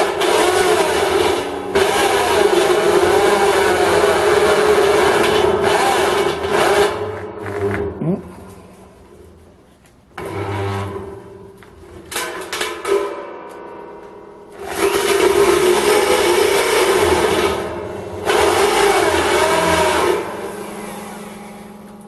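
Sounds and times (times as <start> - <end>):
noisy drill gearbox: 0.0 - 7.9, 10.2 - 11.2, 14.6 - 22.0
electric drill motor whine: 14.6 - 22.0.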